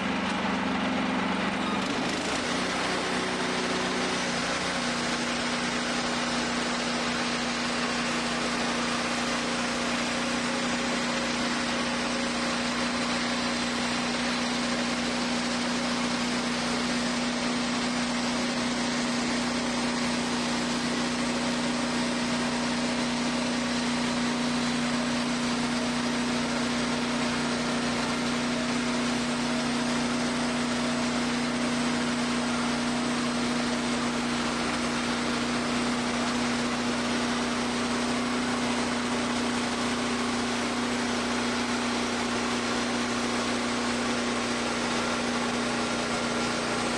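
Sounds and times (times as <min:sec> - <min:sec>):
band sawmill running: 0:00.0 - 0:46.9.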